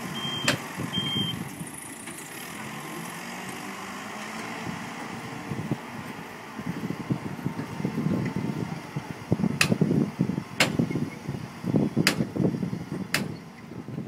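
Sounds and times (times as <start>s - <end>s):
sharp knocks: 13.1s - 13.4s.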